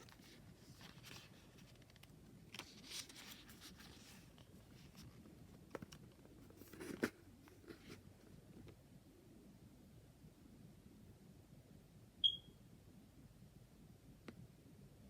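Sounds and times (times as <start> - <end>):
cards rustling and clicking: 0.0 - 7.1.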